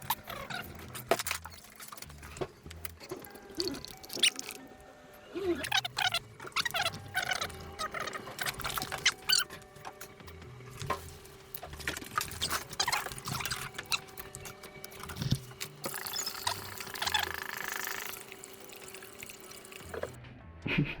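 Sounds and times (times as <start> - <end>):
liquid being poured: 3.1 - 4.7, 12.3 - 20.2.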